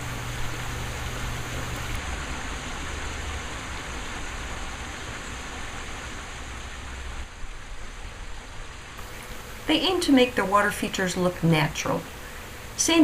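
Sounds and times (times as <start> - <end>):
waterfall splashing: 0.0 - 6.9.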